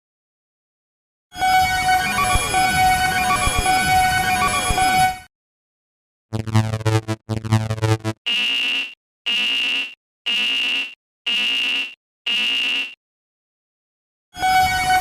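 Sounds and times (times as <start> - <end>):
low electronic tones: 6.3 - 8.5
high electronic beeps: 6.4 - 13.0.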